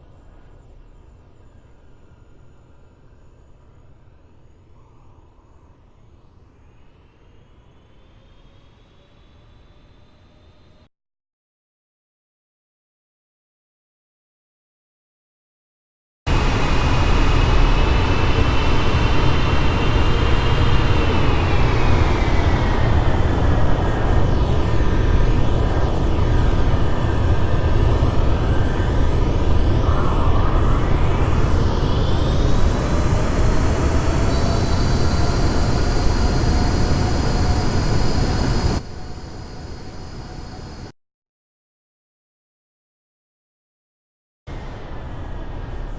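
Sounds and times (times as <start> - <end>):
jet engines running: 16.3 - 40.9.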